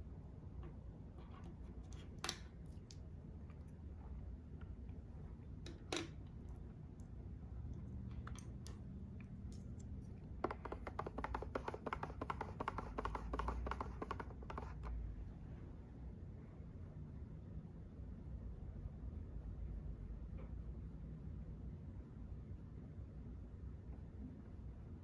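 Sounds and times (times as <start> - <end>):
rapid tapping and scratching: 10.2 - 15.0.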